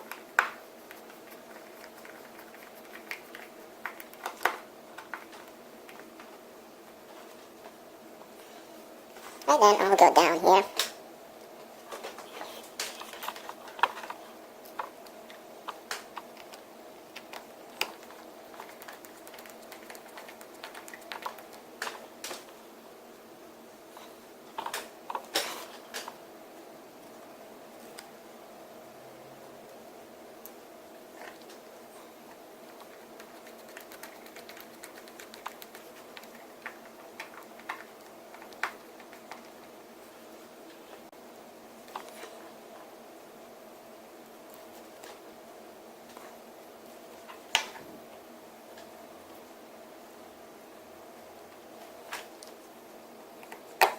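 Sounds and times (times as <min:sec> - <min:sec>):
faint hum: 0:00.0 - 0:53.9.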